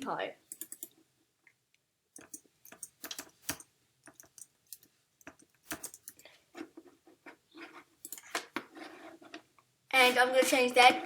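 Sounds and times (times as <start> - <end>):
keyboard typing clicks: 0.5 - 1.0, 2.2 - 6.2, 8.0 - 8.2.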